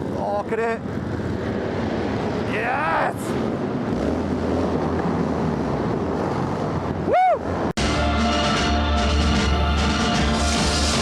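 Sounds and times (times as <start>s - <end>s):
motorcycle engines rumbling: 0.0s - 7.7s
person shouting: 2.5s - 3.3s.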